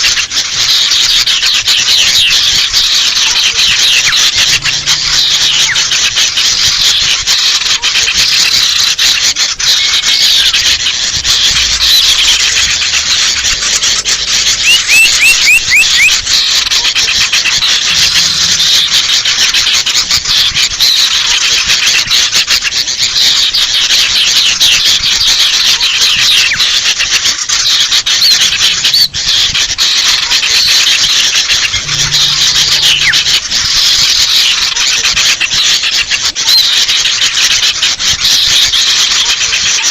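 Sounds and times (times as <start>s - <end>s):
birds chattering harshly: 0.0s - 39.9s
rising bird notes: 9.8s - 17.0s, 30.4s - 34.9s.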